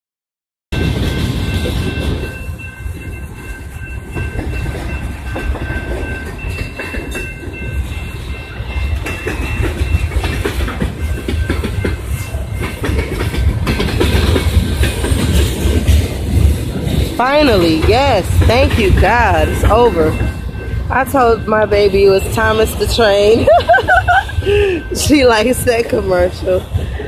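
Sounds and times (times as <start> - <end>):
train rumbling past: 0.7 - 27.0
wheels clacking over rail joints: 0.8 - 23.4
steady high tone: 17.2 - 26.8.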